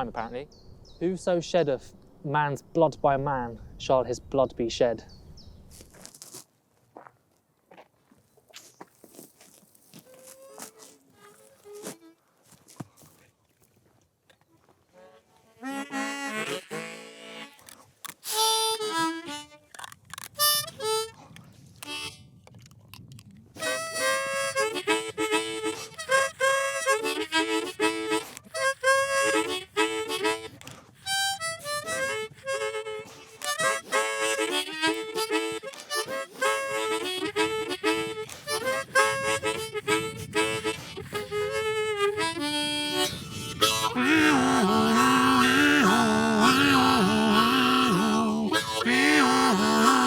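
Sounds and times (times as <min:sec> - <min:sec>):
solo harmonica playing: 0:09.8 - 0:12.7, 0:14.8 - 0:22.4, 0:23.6 - 0:50.0.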